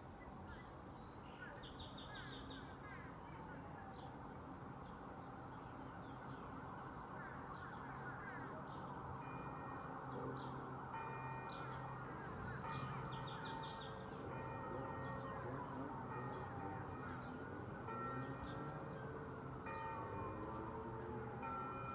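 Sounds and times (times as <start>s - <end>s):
church bells ringing: 9.1s - 21.9s.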